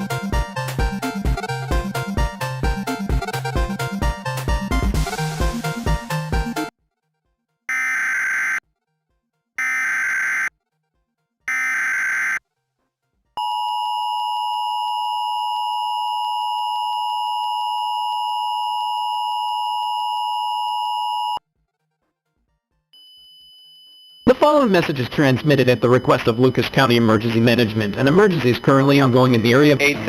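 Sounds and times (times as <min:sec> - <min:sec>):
steady two-tone alarm: 0:09.6 - 0:10.5, 0:11.5 - 0:12.4, 0:13.4 - 0:21.4, 0:23.0 - 0:29.8.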